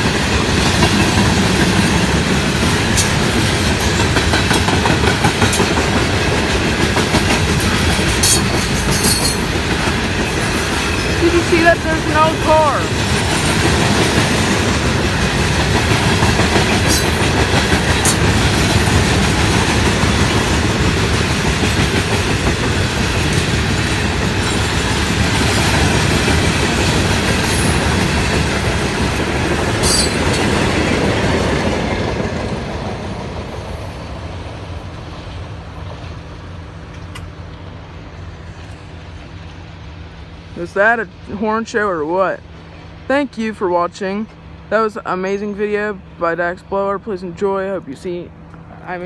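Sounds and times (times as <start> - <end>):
wheels clacking over rail joints: 0.0 - 33.8
train cars rumbling past: 0.0 - 49.0
high wheel squeals: 7.6 - 9.5, 26.8 - 28.5, 29.8 - 30.4.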